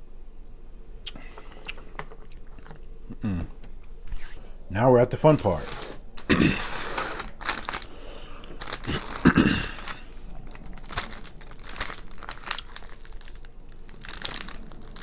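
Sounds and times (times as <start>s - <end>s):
wrappers crinkling: 5.2s - 15.0s.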